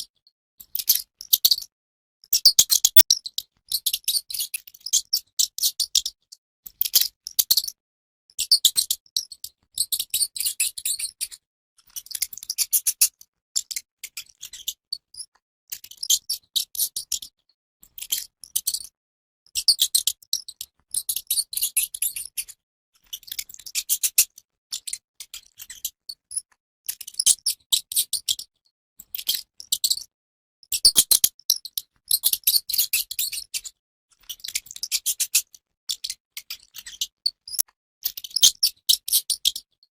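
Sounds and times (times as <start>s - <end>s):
mouse squeaking: 2.5s - 3.0s, 30.9s - 31.3s, 38.4s - 38.6s.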